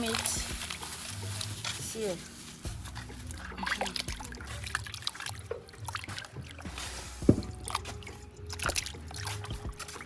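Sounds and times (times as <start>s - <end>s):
water splashing in a bowl: 0.0s - 10.0s
knocks in a bowl: 7.2s - 7.6s.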